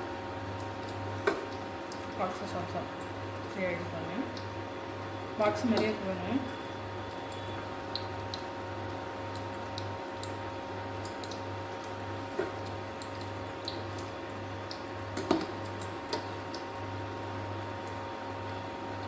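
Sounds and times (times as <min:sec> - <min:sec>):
snacks deep-frying in oil: 0:00.0 - 0:19.0.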